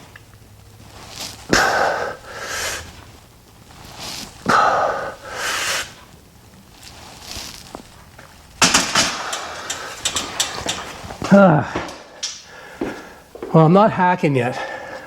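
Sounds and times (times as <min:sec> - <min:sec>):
man breathing hard: 0:01.5 - 0:03.0, 0:04.4 - 0:06.0, 0:09.0 - 0:10.5, 0:11.2 - 0:13.4, 0:14.5 - 0:15.0
metallic clattering and clicks: 0:08.6 - 0:11.2.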